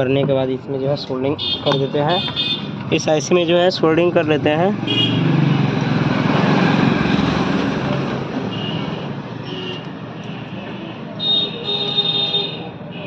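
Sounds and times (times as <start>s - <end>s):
motor vehicle passing: 4.2s - 9.4s.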